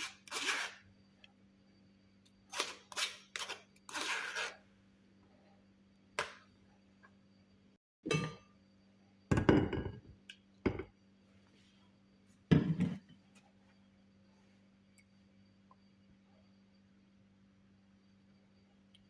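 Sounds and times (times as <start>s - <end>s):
kitchenware knocking and clinking: 8.1s - 8.4s, 9.3s - 10.1s, 10.7s - 10.9s, 12.5s - 13.1s.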